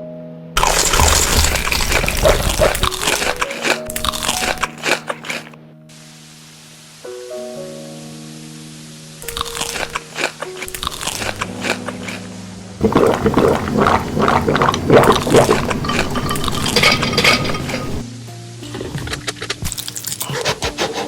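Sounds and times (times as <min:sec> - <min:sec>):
soft background music: 0:00.0 - 0:21.0
crunching and chewing food: 0:00.6 - 0:05.5, 0:09.2 - 0:18.0, 0:18.6 - 0:20.5.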